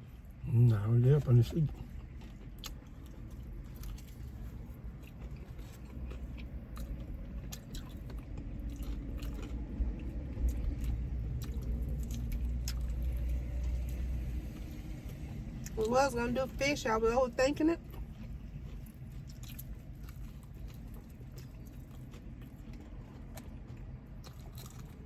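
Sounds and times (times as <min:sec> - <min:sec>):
chewing fried chicken: 0:00.0 - 0:25.0.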